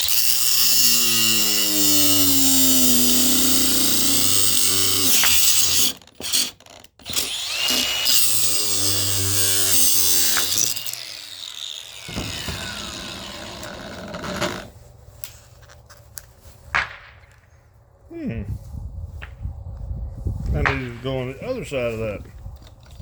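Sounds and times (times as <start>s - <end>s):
power tool cutting metal shaft: 0.0s - 14.7s.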